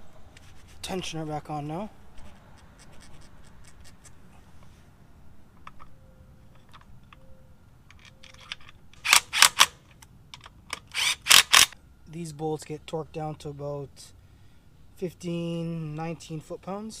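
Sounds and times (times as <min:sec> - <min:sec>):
ratchet wrench clicking: 0:10.8 - 0:11.8.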